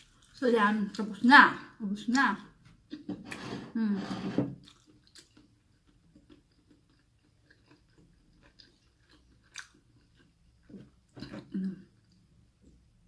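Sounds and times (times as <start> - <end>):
chewing and mouth sounds: 4.6 - 12.2.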